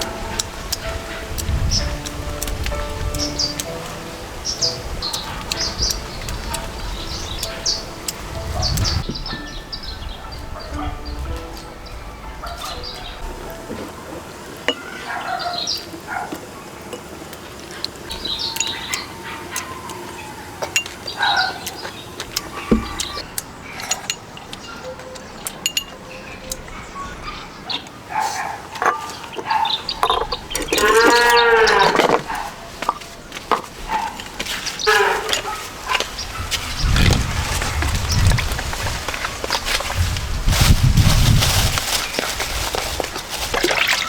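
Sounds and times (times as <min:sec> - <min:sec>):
drawn-out animal call: 0:00.0 - 0:16.2, 0:26.6 - 0:40.1
farm animals calling: 0:00.0 - 0:16.8, 0:17.8 - 0:40.1
clinks: 0:22.4 - 0:26.8.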